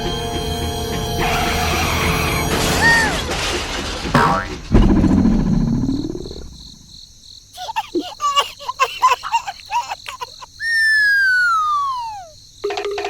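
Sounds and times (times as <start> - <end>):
high squeaky cartoon chatter: 2.7 - 3.2, 7.6 - 12.4
long falling whistle: 10.6 - 12.3.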